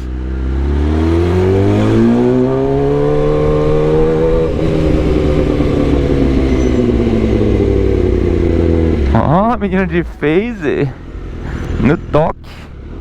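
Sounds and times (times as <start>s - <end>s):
motorcycle engine accelerating: 0.0s - 13.0s.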